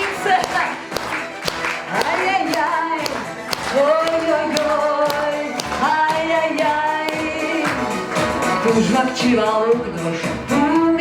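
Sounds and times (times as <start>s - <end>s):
clapping in time: 0.4s - 6.0s.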